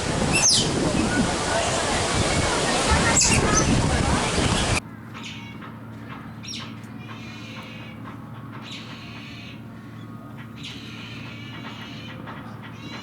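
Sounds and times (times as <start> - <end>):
dolphins squealing: 0.2 - 3.8.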